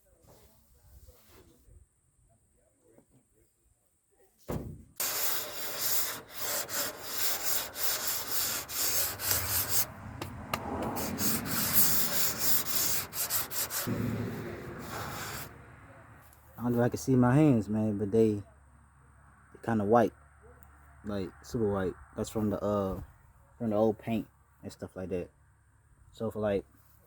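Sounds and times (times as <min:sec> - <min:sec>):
sandpaper rubbing on metal: 0:05.0 - 0:09.9, 0:10.8 - 0:14.0, 0:14.6 - 0:15.5.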